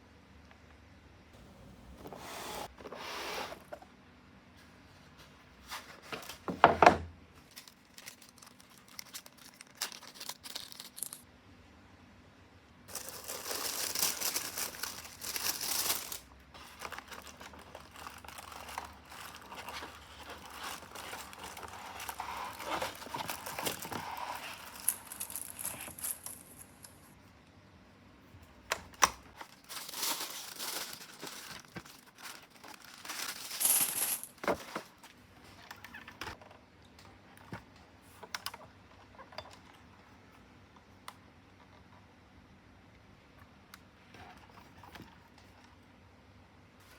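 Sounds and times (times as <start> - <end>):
packaging crinkling and tearing: 7.4 - 11.2, 12.9 - 26.5, 29.3 - 35.0.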